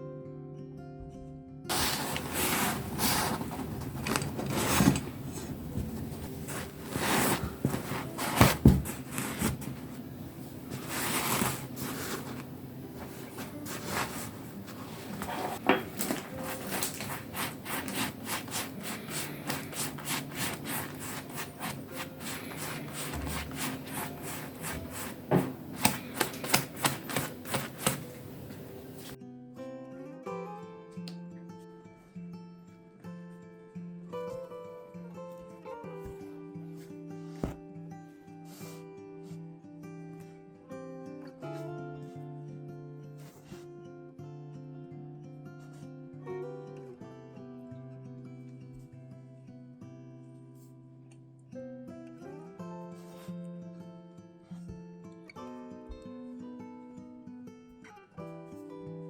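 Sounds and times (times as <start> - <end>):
rubbing and scraping on hard surface: 1.7 - 29.2.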